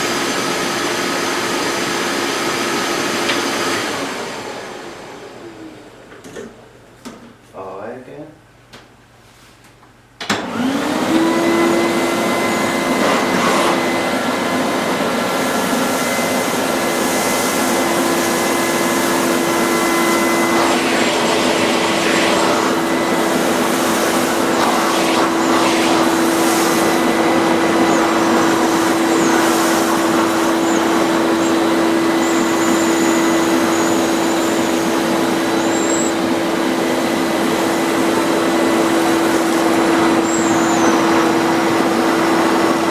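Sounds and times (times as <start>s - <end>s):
vacuum cleaner motor whine: 0.0s - 6.3s, 10.2s - 42.9s.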